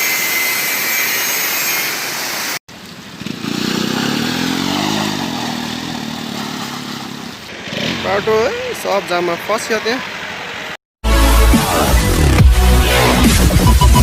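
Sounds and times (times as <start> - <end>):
motorcycle engine revving: 2.7 - 8.8.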